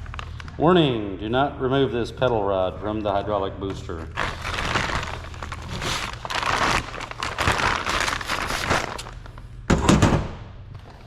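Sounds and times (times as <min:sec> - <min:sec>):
packaging crinkling and rustling: 0:00.0 - 0:00.6, 0:03.8 - 0:09.5
steady low hum: 0:00.0 - 0:11.0.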